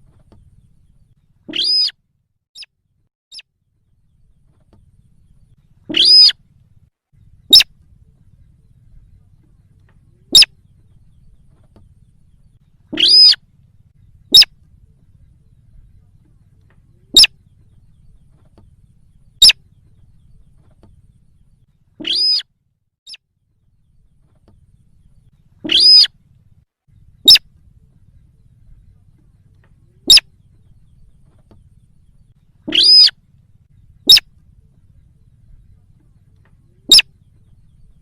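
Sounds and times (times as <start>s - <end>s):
recorded bird call: 0.0s - 2.0s, 2.6s - 22.5s, 23.1s - 38.0s
faint low hum: 0.0s - 38.0s.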